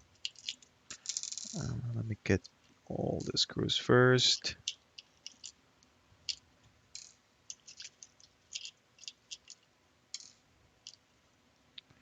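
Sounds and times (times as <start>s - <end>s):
small screws clinking: 0.2s - 1.6s, 6.3s - 11.0s.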